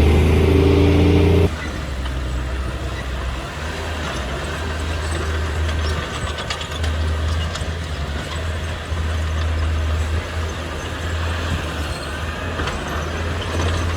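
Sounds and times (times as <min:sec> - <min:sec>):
diesel engine rumbling: 0:00.0 - 0:03.5, 0:06.9 - 0:13.9.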